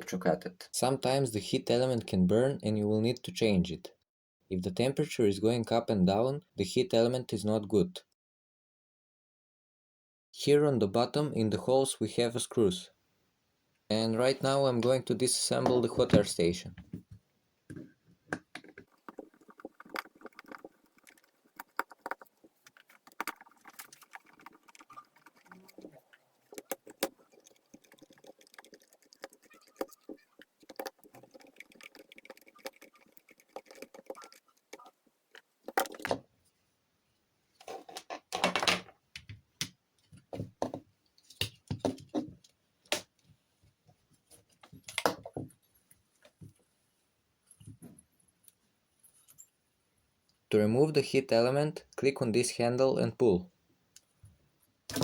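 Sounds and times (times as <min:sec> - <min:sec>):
screws clicking and scraping: 0:18.6 - 0:36.1.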